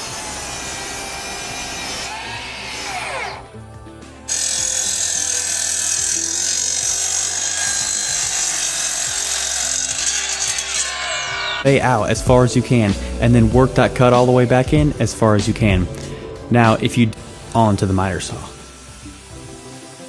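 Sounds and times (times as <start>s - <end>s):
miter saw motor running: 0.0s - 3.5s, 4.3s - 11.7s, 17.0s - 20.0s.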